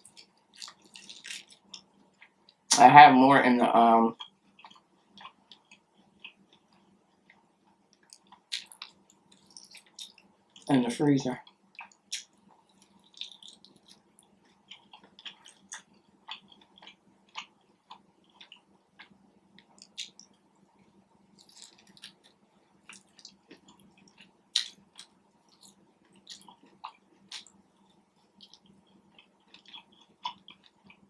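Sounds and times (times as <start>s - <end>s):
chewing and wet mouth sounds: 0.0s - 2.8s, 4.1s - 10.7s, 11.4s - 31.0s
faint steady hum: 0.0s - 31.0s
small crunches: 0.1s - 1.8s, 8.1s - 10.7s, 11.8s - 14.0s, 21.4s - 27.5s.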